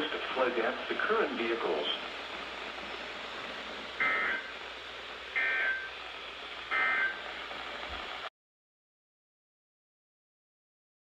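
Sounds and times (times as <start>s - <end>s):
radio hiss: 0.0s - 8.3s
buzzy digital chirps: 2.8s - 4.6s, 5.3s - 6.0s, 6.7s - 7.3s.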